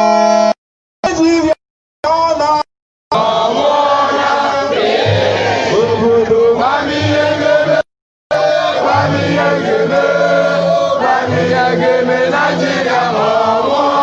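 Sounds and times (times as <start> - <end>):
crowd singing in chorus: 3.1 - 14.0.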